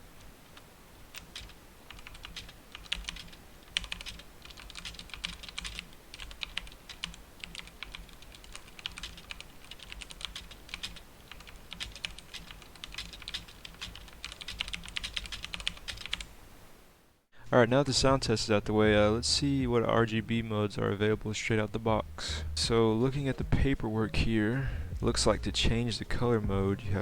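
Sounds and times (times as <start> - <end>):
mechanical keyboard typing: 1.1 - 16.3.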